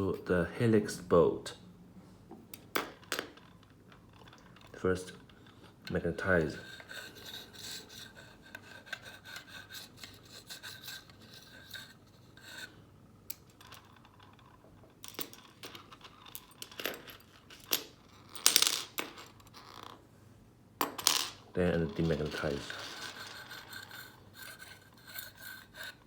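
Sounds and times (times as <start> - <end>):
faint metal scraping: 3.3 - 12.9, 21.5 - 26.0.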